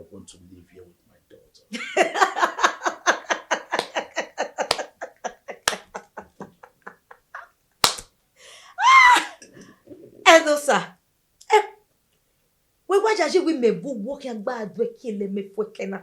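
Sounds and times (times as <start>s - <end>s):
person laughing hard: 1.8s - 7.5s.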